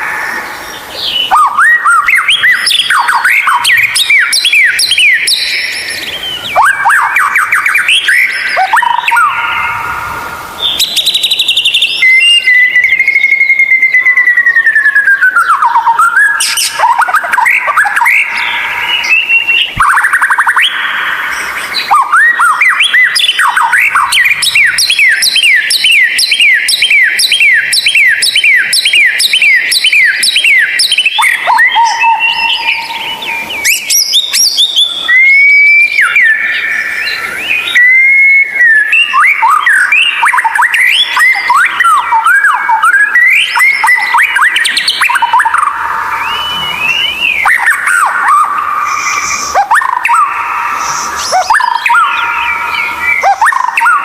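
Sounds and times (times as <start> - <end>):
bird singing whistled phrases: 0.0 - 54.0.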